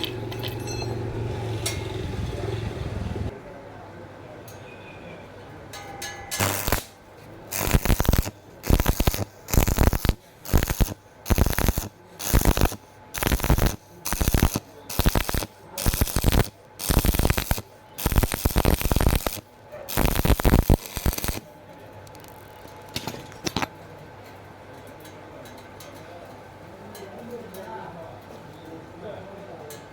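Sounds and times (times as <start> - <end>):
welding arc crackling: 6.3 - 23.7.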